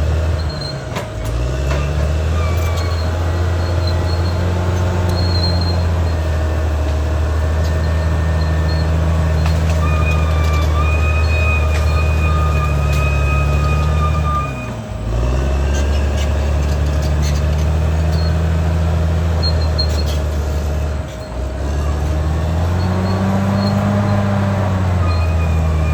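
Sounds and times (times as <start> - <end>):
bulldozer diesel engine: 0.0 - 25.9
high thin squeal: 2.3 - 6.4, 7.8 - 14.8, 22.7 - 25.9.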